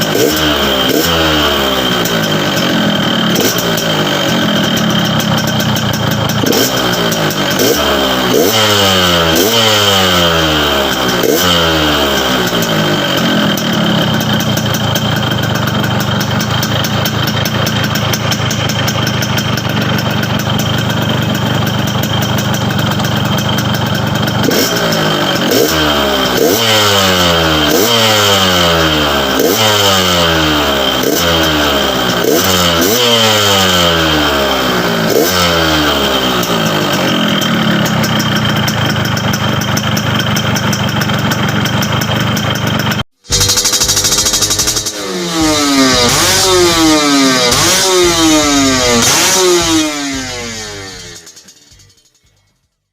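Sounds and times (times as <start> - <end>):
two-stroke motorcycle engine revving: 0.0 - 52.8.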